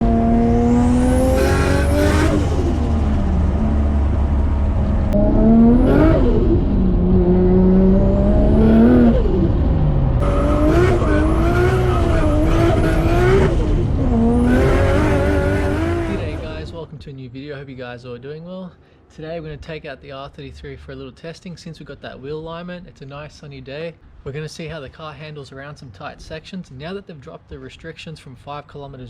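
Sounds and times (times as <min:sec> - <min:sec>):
car engine revving: 0:00.0 - 0:16.9.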